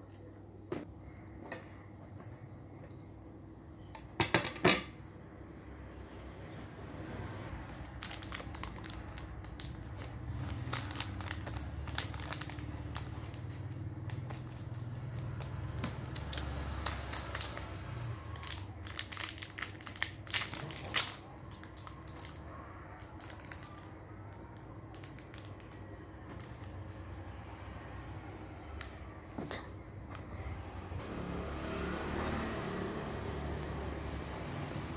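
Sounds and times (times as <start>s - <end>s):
crunching while eating: 7.6s - 24.0s.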